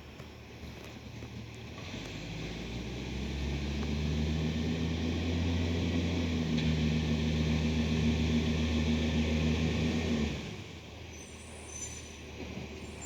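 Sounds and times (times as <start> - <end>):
garbage truck diesel engine: 2.0 - 10.8.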